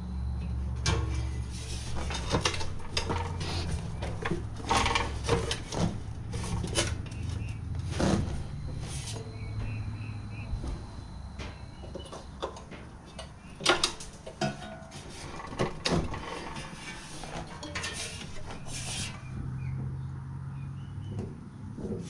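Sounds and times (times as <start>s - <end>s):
tools and metal parts clanking: 0.7s - 19.7s
metal scrape: 0.8s - 9.8s, 13.7s - 19.4s.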